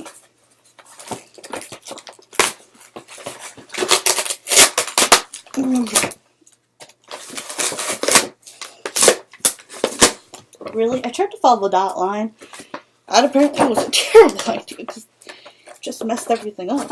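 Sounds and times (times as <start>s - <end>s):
plastic packaging crackling: 1.0s - 6.2s, 6.8s - 10.8s.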